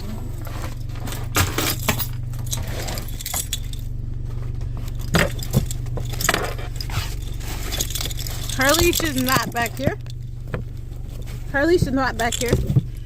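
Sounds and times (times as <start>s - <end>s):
steady low hum: 0.0s - 13.0s
objects knocking and clinking: 4.8s - 10.8s, 11.8s - 13.0s.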